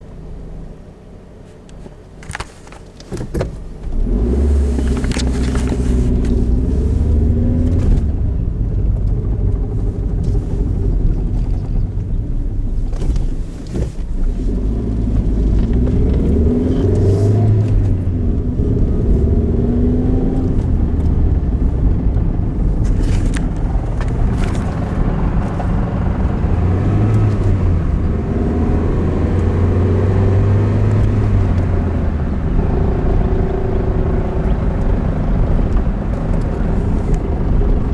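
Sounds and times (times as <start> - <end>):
car engine rumbling: 0.0 - 37.9
transmission rattle: 20.2 - 28.2.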